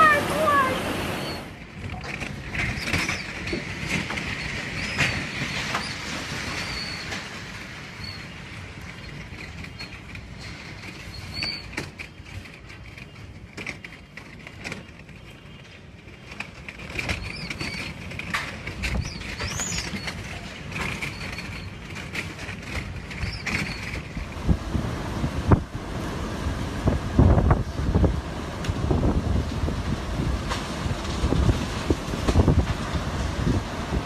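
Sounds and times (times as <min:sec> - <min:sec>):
strong wind rushing: 0:20.6 - 0:34.0.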